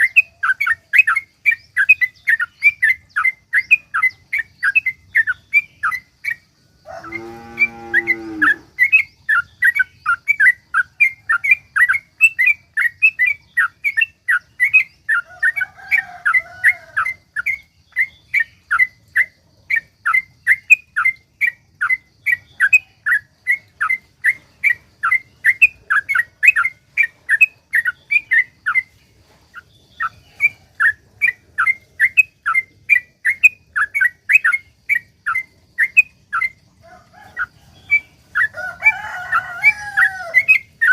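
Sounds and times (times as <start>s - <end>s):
bird chirping rapidly: 0.0s - 40.9s
low drawn-out bird call: 6.8s - 9.1s.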